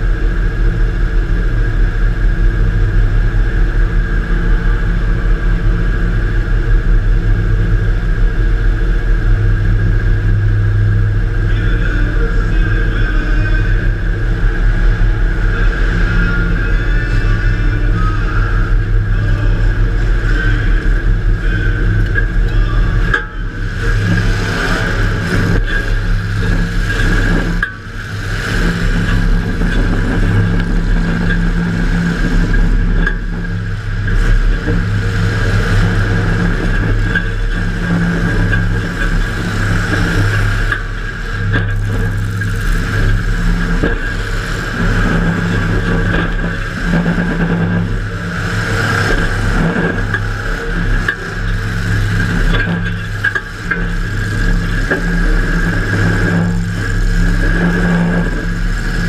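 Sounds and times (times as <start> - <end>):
car engine running hard: 0.0 - 59.0.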